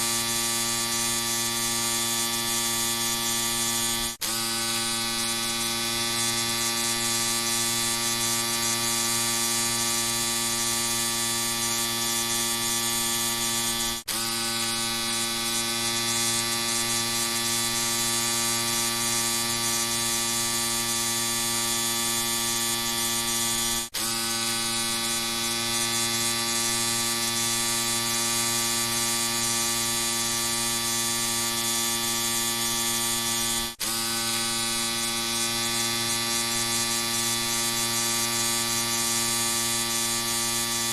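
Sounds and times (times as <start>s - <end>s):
electric shaver buzzing: 0.0s - 40.9s.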